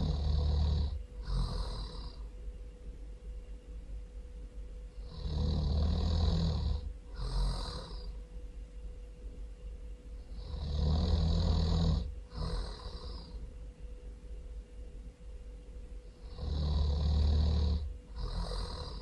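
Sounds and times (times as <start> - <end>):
person snoring loudly: 0.0 - 2.3, 5.0 - 8.1, 10.3 - 13.4, 16.2 - 19.0.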